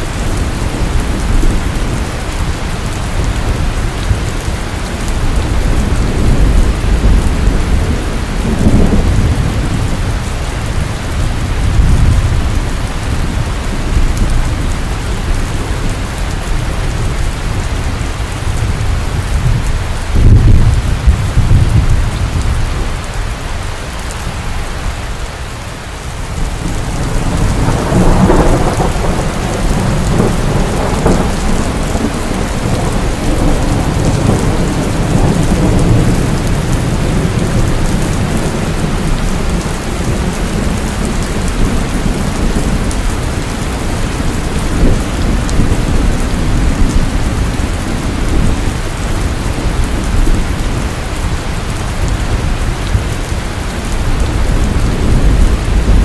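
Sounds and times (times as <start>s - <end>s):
thunder rumbling: 0.0s - 23.6s, 26.1s - 56.0s
heavy rain pouring: 0.0s - 56.0s.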